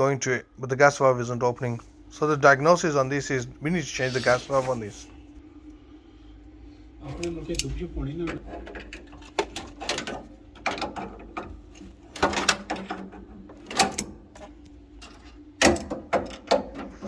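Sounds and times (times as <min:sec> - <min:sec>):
faint low hum: 0:00.0 - 0:17.0
metal parts clicking and knocking: 0:08.3 - 0:17.0.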